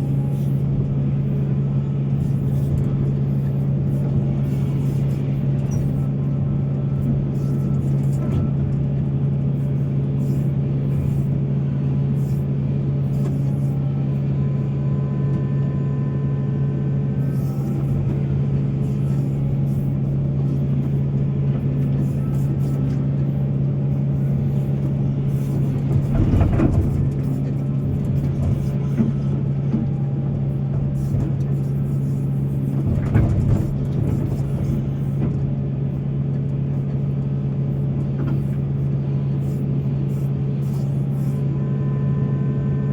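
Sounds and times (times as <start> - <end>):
heavy diesel engine drone: 0.0 - 42.9.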